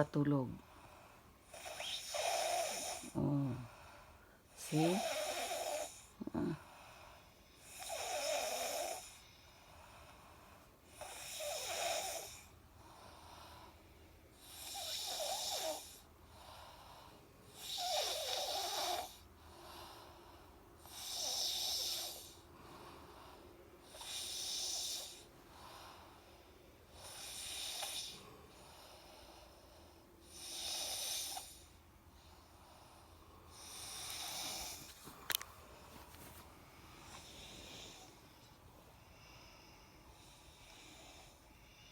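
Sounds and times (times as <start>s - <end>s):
person snoring: 1.5s - 3.8s, 4.6s - 6.7s.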